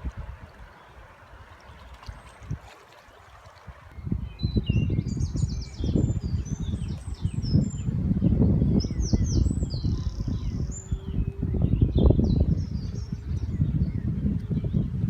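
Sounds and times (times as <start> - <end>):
wind buffeting microphone: 0.0 - 15.0
birds chirping and singing: 3.9 - 15.0.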